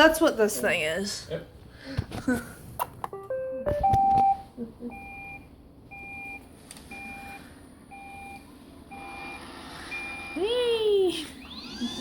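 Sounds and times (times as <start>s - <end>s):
robot vacuum beeping: 8.9s - 10.6s, 11.2s - 12.0s.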